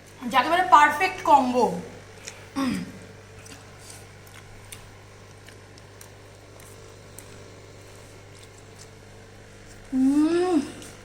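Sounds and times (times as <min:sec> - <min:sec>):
person chewing wetly: 0:03.3 - 0:09.9.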